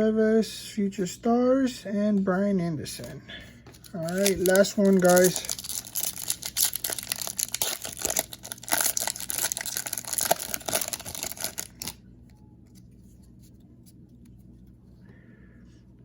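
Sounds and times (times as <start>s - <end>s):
foil wrapper tearing and crinkling: 3.8s - 12.0s.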